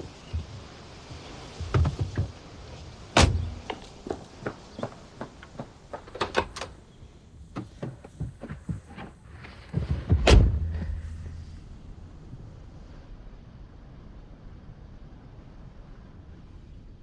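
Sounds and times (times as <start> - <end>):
door shutting with heavy thud: 3.2 - 3.7, 9.9 - 11.2
low hum: 3.2 - 4.1, 8.4 - 17.0.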